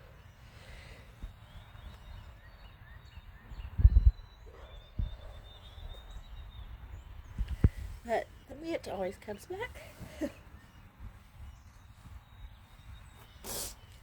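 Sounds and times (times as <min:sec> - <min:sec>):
faint birds chirping: 0:00.0 - 0:14.0
dull low thumps: 0:03.4 - 0:08.1.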